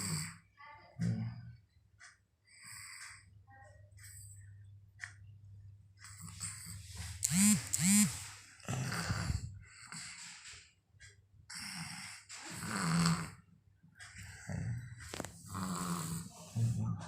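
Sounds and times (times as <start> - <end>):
snoring breaths: 0.0 - 0.4, 2.5 - 3.4, 8.0 - 10.7, 11.5 - 13.5, 14.1 - 17.0.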